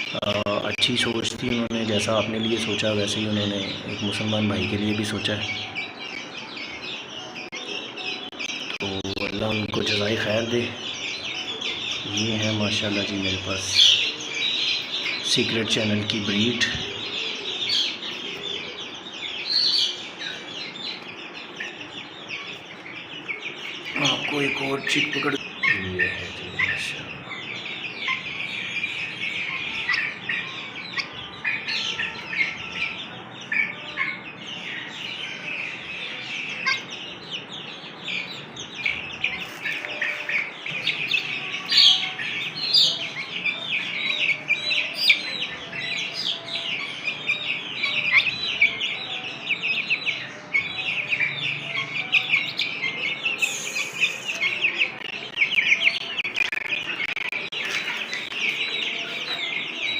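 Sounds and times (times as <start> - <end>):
chicks peeping: 0.0 - 59.9.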